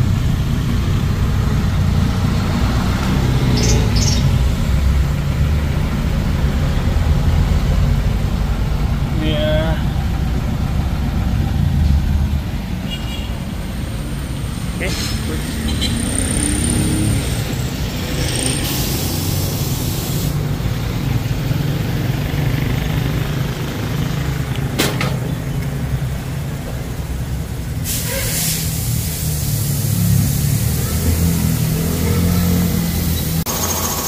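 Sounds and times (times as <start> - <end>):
compressed air hissing: 17.5 - 20.4, 27.8 - 33.5.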